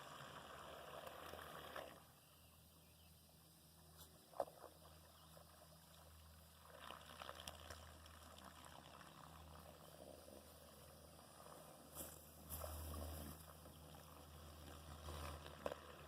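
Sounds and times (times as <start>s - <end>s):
low steady hum: 0.0s - 16.0s
water trickling and lapping: 0.0s - 16.0s.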